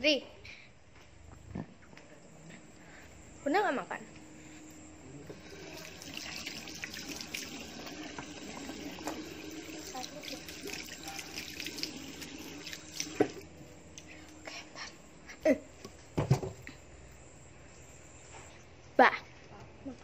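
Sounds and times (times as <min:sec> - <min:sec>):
tap water running into sink: 0:05.3 - 0:13.4.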